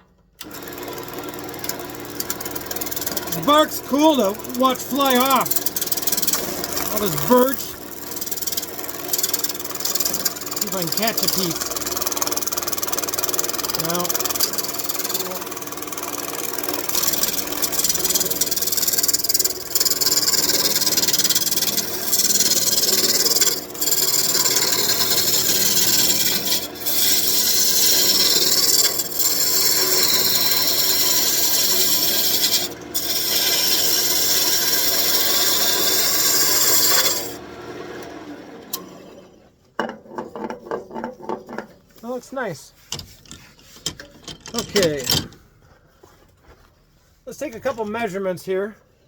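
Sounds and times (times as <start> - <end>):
low machine noise: 0.3 - 39.8
lathe tool shaving wood: 0.4 - 38.8.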